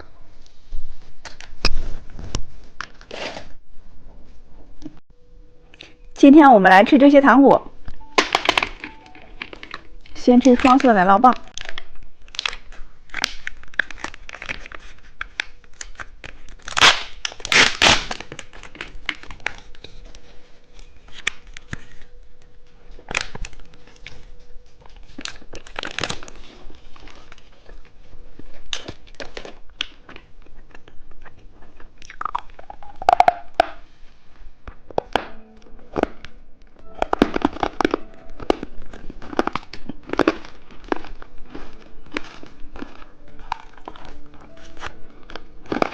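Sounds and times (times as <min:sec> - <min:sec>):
plastic wrapper crinkling: 0:08.0 - 0:33.9, 0:34.8 - 0:45.9
close-up chewing: 0:11.4 - 0:33.8, 0:37.0 - 0:45.9.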